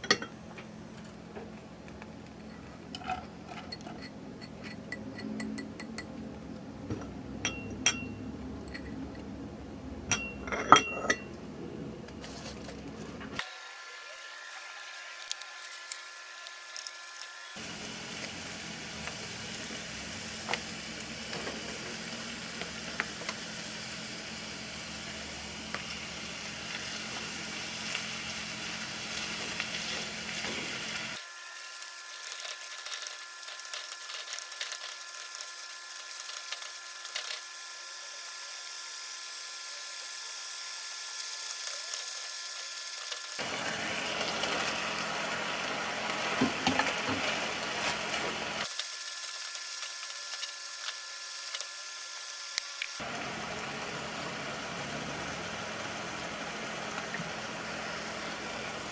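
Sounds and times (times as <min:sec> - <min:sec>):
dishes and utensils clinking: 0:07.0 - 0:09.0, 0:10.1 - 0:11.3.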